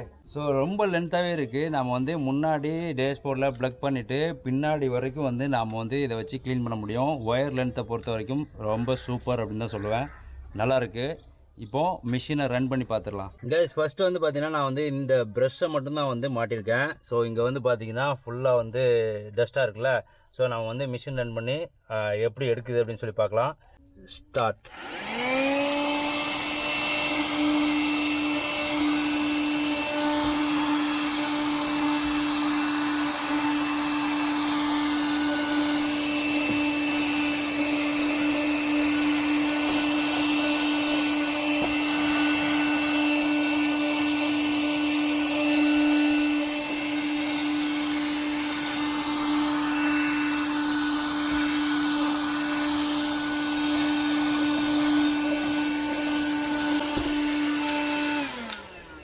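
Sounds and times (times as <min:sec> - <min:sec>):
vacuum cleaner motor whine: 0:24.6 - 0:59.0.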